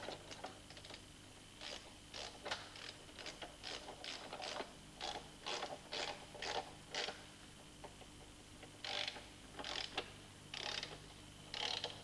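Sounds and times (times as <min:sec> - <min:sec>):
ratchet wrench clicking: 0:08.8 - 0:12.0.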